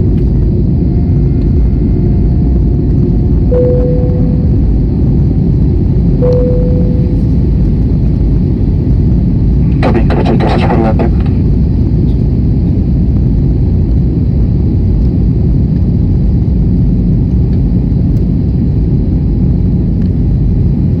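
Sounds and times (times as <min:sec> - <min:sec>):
aircraft cabin engine rumble: 0:00.0 - 0:21.0.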